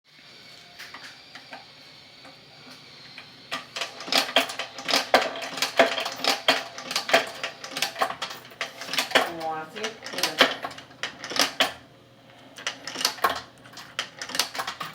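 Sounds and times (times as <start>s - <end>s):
metal coins clinking: 12.6s - 14.9s.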